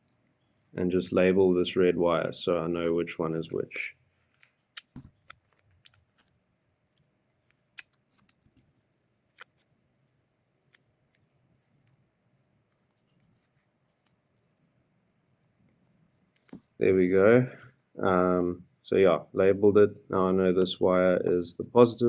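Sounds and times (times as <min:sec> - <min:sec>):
tape clicks and snips: 0:03.5 - 0:08.7, 0:09.3 - 0:09.7.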